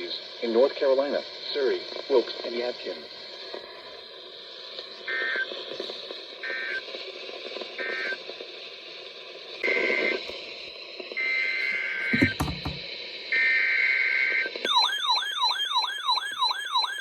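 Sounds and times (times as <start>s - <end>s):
radio static and crackling clicks: 0.0s - 8.8s.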